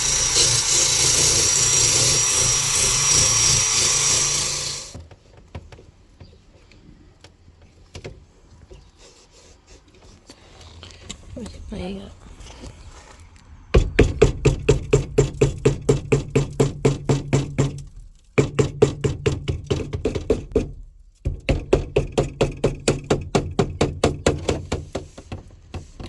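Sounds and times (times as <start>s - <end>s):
small motor humming: 0.0s - 5.0s.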